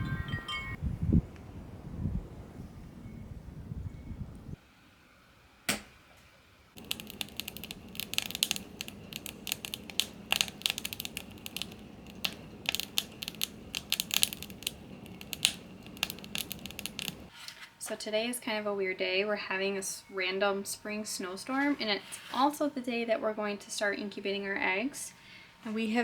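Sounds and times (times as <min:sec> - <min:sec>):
wood fire crackling and popping: 0:06.8 - 0:17.3.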